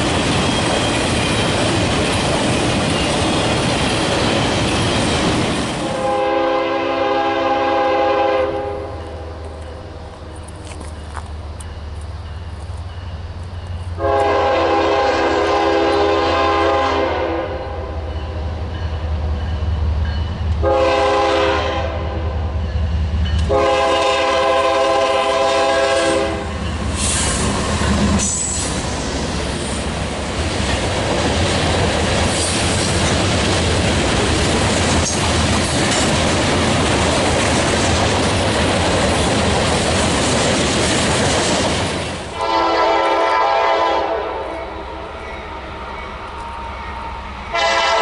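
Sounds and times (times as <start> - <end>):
wheels clattering on rail joints: 0.0 - 5.9, 26.6 - 42.3
train engine rumble: 0.0 - 48.0
locomotive air horn blasts: 5.9 - 9.0, 14.0 - 18.0, 20.6 - 22.4, 23.5 - 27.3, 42.4 - 45.1, 47.5 - 48.0.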